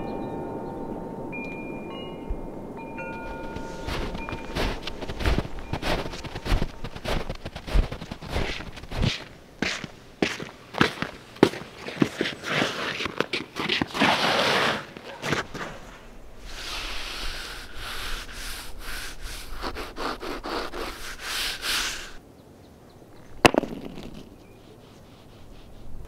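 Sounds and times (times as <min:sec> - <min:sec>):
scraping across ice: 0:03.1 - 0:22.2.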